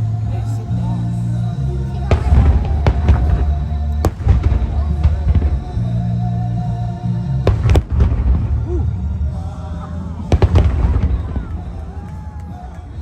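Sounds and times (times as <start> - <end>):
low rumble: 0.0 - 13.0
music: 0.0 - 13.0
fireworks bangs: 1.8 - 5.9, 10.3 - 12.7.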